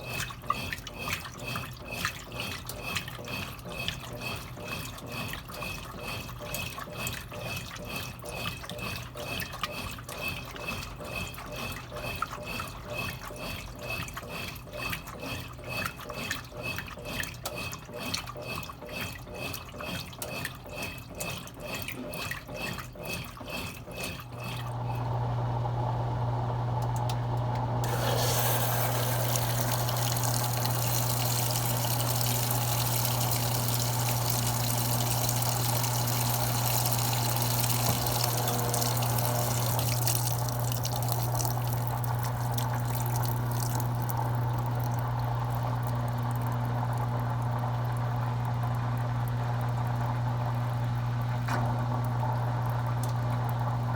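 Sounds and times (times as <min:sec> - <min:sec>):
washing machine rhythmic pulsing: 0:00.0 - 0:53.9
water rushing through machine: 0:27.8 - 0:53.7.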